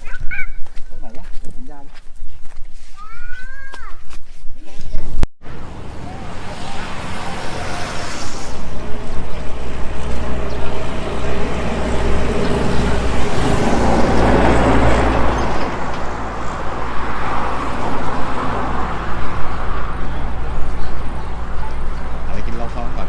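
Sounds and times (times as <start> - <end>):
road and wind noise: 0.0 - 23.0
vehicle low rumble: 5.4 - 23.0.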